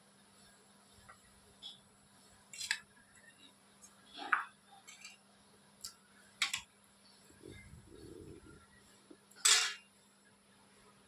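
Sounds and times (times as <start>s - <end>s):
dishes and utensils clinking: 4.2s - 5.2s, 9.4s - 9.8s
soft low handling noise: 6.5s - 9.8s
loud bright dish clatter: 9.4s - 9.8s.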